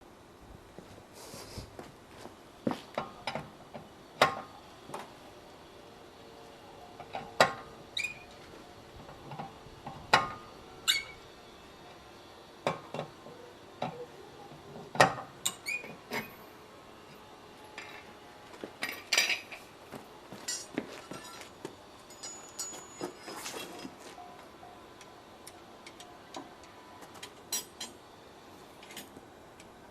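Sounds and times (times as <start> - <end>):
metal tools clinking: 18.8 - 19.7, 20.4 - 24.2.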